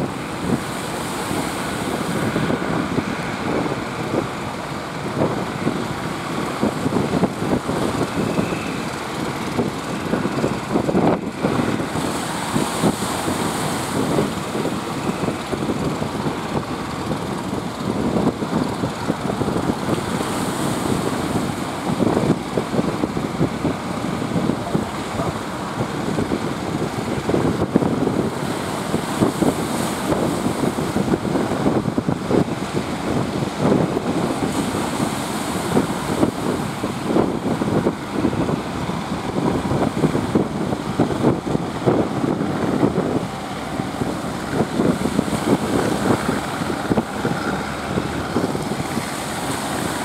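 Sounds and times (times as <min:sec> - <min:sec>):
boat and sea noise: 0:00.0 - 0:50.0
wind buffeting microphone: 0:00.0 - 0:50.0.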